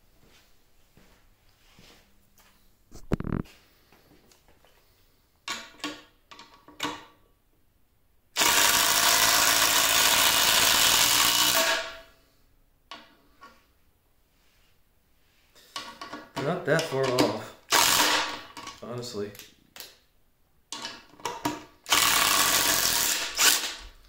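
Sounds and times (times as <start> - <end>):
impact driver driving bolt into wood: 8.4 - 12.0, 17.2 - 18.6, 20.8 - 23.9.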